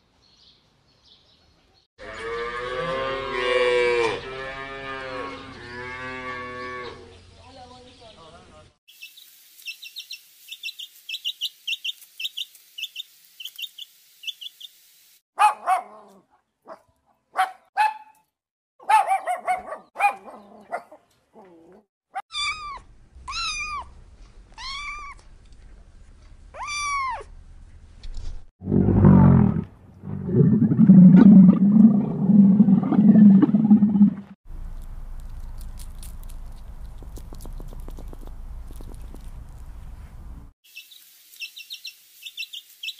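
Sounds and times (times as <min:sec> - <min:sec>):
high chirping trills: 0:08.9 - 0:14.8
animal squawks and cries: 0:18.9 - 0:23.9, 0:24.6 - 0:25.2, 0:26.6 - 0:27.3
rising-and-falling animal cries: 0:22.2 - 0:23.9, 0:26.6 - 0:27.3
loud deep growl: 0:28.6 - 0:34.3.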